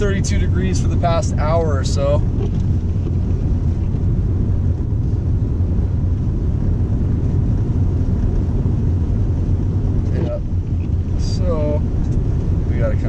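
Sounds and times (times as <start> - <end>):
car driving on snow: 0.0 - 13.0.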